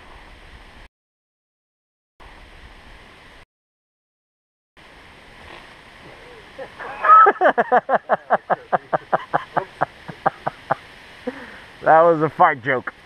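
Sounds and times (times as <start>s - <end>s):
faint outdoor background hiss: 4.8s - 13.0s.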